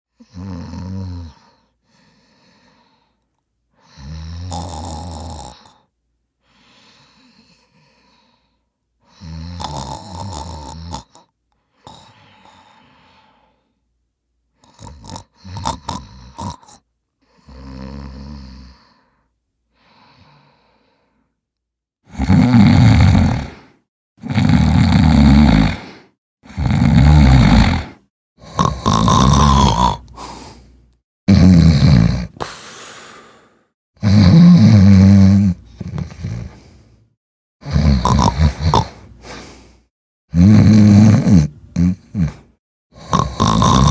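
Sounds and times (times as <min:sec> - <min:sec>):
person snoring: 0:00.2 - 0:01.8, 0:03.8 - 0:05.9, 0:09.1 - 0:13.7, 0:14.6 - 0:19.1, 0:22.1 - 0:43.9.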